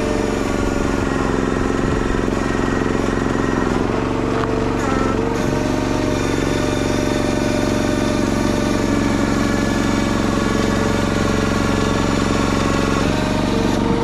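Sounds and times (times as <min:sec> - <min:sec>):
small gasoline engine running: 0:00.0 - 0:14.0.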